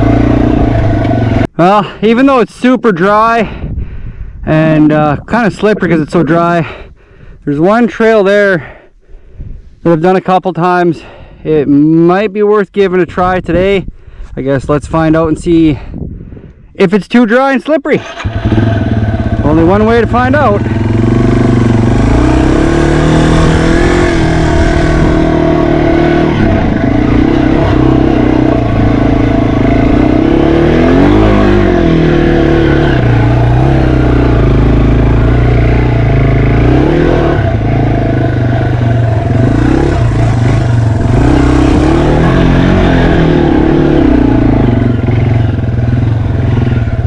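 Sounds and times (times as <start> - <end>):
motorcycle engine revving: 0.0 - 1.6, 18.0 - 47.0.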